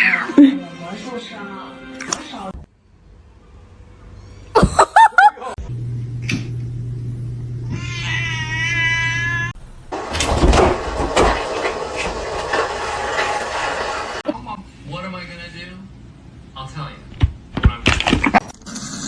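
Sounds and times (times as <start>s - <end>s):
cat meowing: 7.7s - 9.6s
rustling and knocks: 10.0s - 13.8s.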